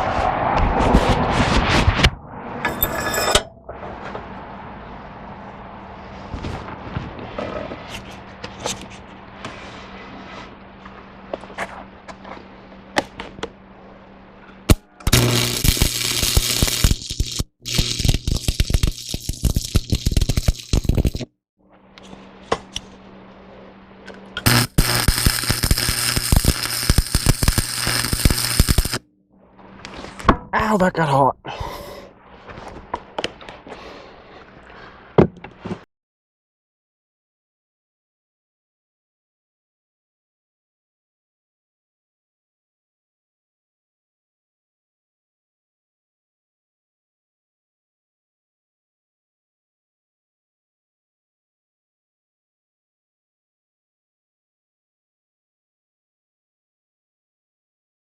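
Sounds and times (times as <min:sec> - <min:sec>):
electrical hum: 0:10.5 - 0:21.2, 0:21.9 - 0:31.1
welding arc crackling: 0:14.7 - 0:21.3, 0:24.4 - 0:29.0
sharp pops: 0:24.4 - 0:29.0.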